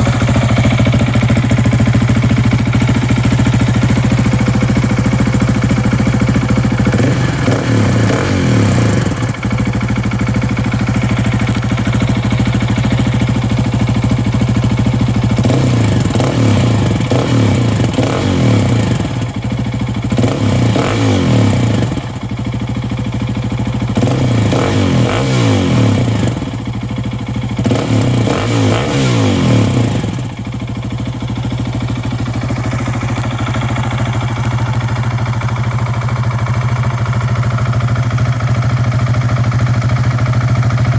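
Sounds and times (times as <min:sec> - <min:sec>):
motorcycle engine idling and revving: 0:00.0 - 0:40.9.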